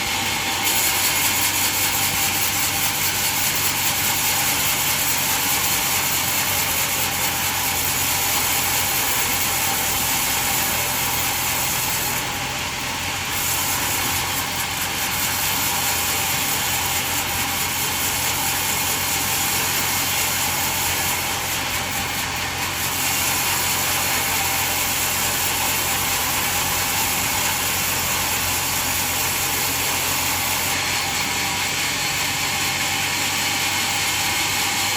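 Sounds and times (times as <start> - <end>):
band sawmill running: 0.0 - 34.9.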